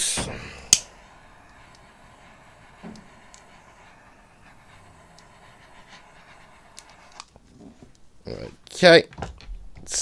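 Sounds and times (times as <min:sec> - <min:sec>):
butane torch hissing: 0:00.0 - 0:08.2.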